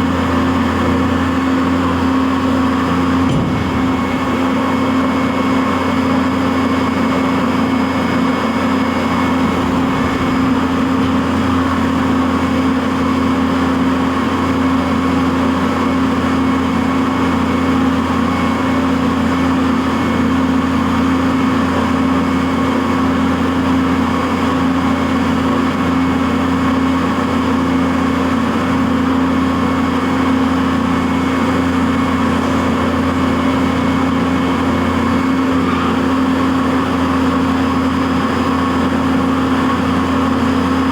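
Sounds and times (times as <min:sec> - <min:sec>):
milling machine hum: 0:00.0 - 0:18.4, 0:28.8 - 0:40.9.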